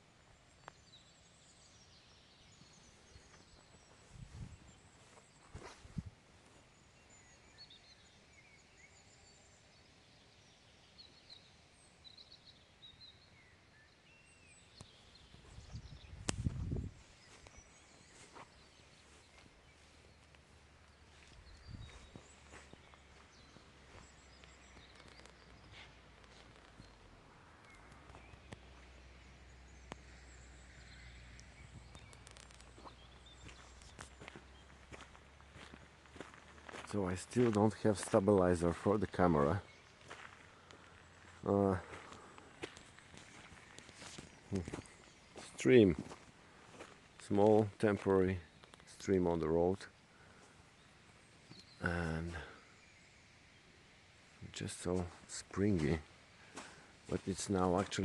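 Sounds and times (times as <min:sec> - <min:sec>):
outdoor background noise: 0:00.0 - 0:58.0
small birds chirping: 0:00.0 - 0:58.0.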